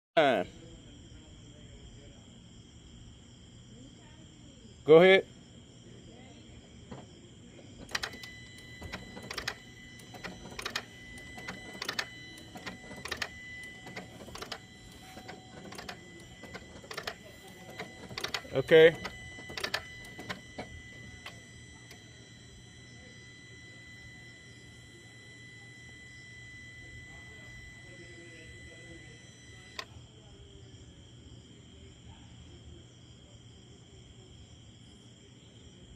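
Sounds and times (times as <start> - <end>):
faint steady hum: 0.2 - 35.9
faint steady high tone: 5.8 - 33.3
rapid clicking of car starter: 7.8 - 22.0.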